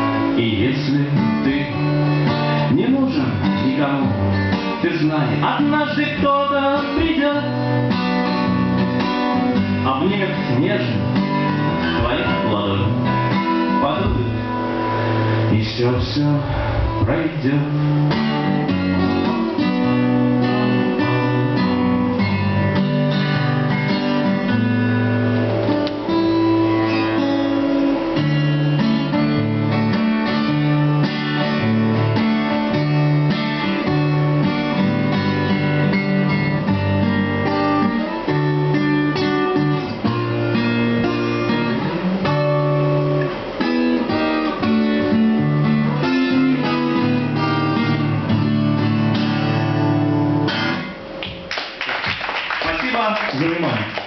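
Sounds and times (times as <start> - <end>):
acoustic guitars playing: 0.0 - 54.0.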